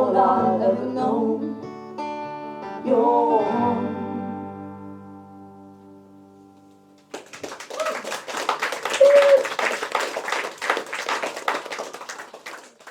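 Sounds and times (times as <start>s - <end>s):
audience applause: 7.1s - 12.9s
person whooping cheer: 7.6s - 9.9s.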